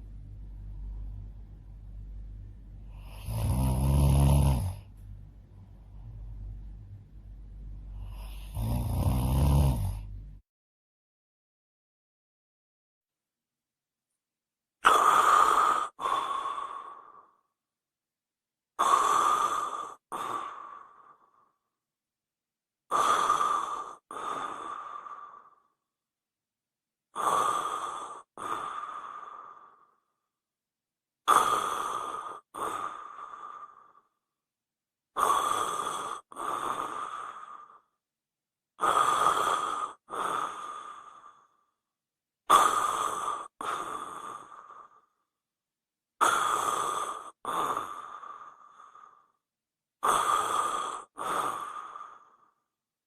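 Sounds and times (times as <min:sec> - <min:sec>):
person snoring: 0:02.8 - 0:05.0, 0:07.8 - 0:10.2, 0:14.8 - 0:17.4, 0:18.8 - 0:21.5, 0:22.9 - 0:25.7, 0:27.1 - 0:30.0, 0:31.2 - 0:34.2, 0:35.2 - 0:38.0, 0:38.8 - 0:41.7, 0:42.5 - 0:45.2, 0:46.2 - 0:49.4, 0:50.0 - 0:52.6.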